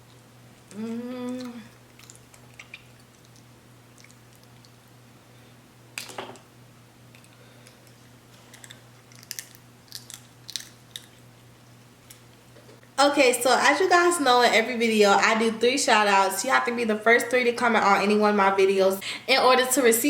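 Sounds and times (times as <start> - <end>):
person chewing food: 0.0 - 4.8, 7.2 - 12.4
low electrical hum: 0.0 - 20.0
person humming: 0.7 - 1.8.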